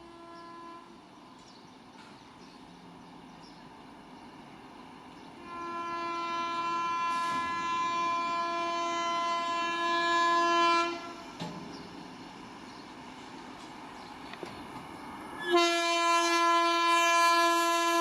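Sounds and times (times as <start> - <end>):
train horn blast: 0.0 - 1.0, 5.4 - 11.4, 15.4 - 18.0
low rumble of train: 0.0 - 18.0.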